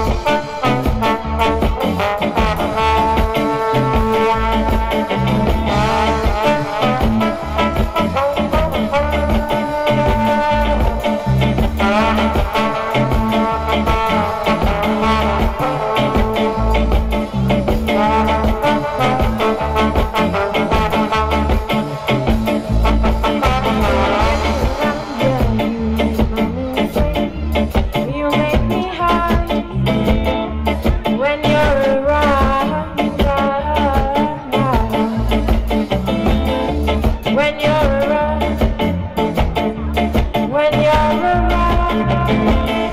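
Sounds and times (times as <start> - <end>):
live band playing instrumental: 0.0 - 42.9.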